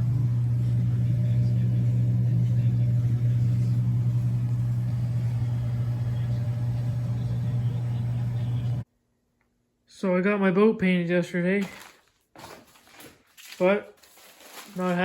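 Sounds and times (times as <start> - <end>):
motor humming: 0.0 - 8.8.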